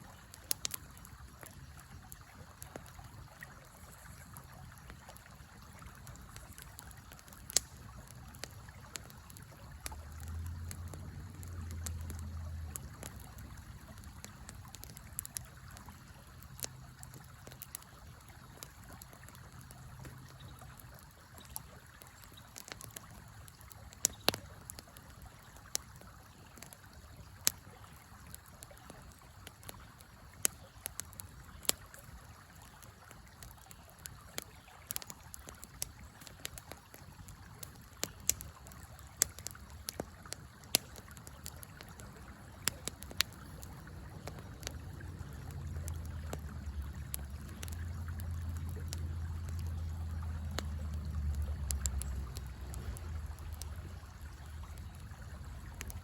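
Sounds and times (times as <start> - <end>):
wood fire crackling and popping: 0.0 - 56.0
low rumble: 44.0 - 56.0.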